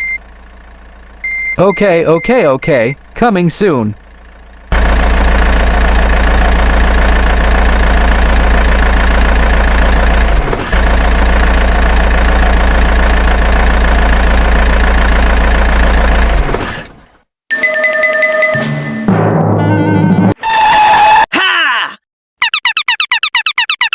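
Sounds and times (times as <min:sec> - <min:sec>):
heavy vehicle engine drone: 0:00.0 - 0:17.0.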